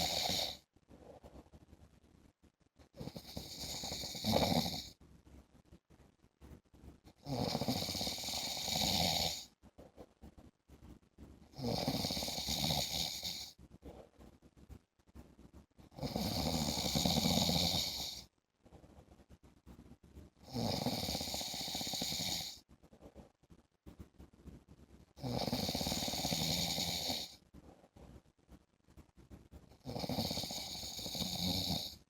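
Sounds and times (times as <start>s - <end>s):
man snoring: 0.0s - 0.6s, 3.0s - 4.9s, 7.2s - 9.5s, 11.6s - 13.5s, 16.0s - 18.2s, 20.4s - 22.6s, 25.2s - 27.4s, 29.8s - 32.0s
quiet breathing: 0.0s - 32.0s.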